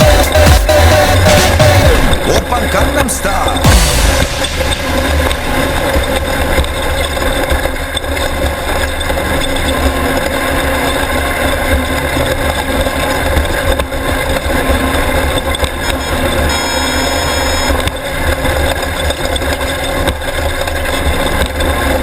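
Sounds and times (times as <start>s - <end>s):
dense rushing noise: 0.0s - 9.3s
race car engine running: 0.0s - 22.0s.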